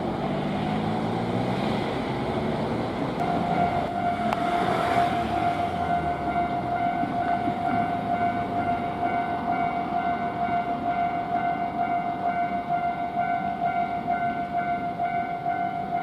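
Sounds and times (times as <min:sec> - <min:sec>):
train rumbling past: 0:00.0 - 0:16.0
level-crossing bell ringing: 0:03.2 - 0:16.0.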